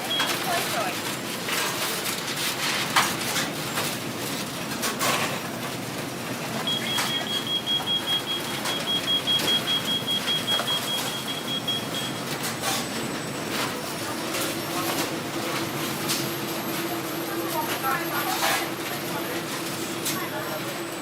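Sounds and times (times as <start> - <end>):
kitchen background noise: 0.0 - 21.0
kitchen clatter: 0.1 - 5.7.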